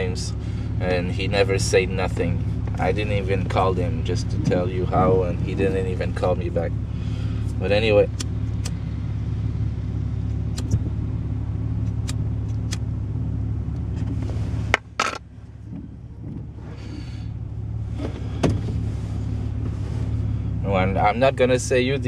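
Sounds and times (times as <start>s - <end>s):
light rattles in cab: 0.0s - 8.8s, 13.7s - 22.0s
truck engine and road drone: 0.0s - 22.0s
sharp click: 11.8s - 12.8s.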